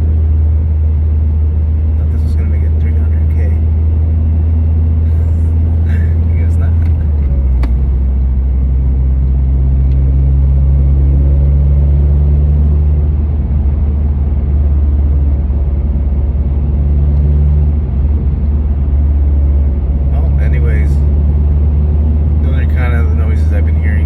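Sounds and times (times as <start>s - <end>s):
rough rattly car engine running: 0.8s - 11.1s, 17.6s - 24.0s.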